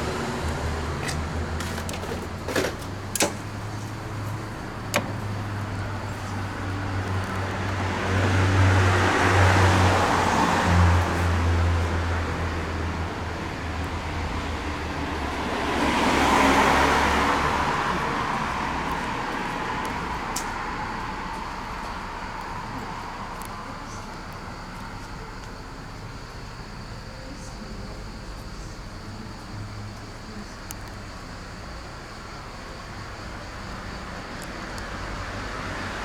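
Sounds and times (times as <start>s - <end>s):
vehicle passing by: 0.0s - 2.8s, 3.6s - 25.2s
engine humming: 0.0s - 36.0s.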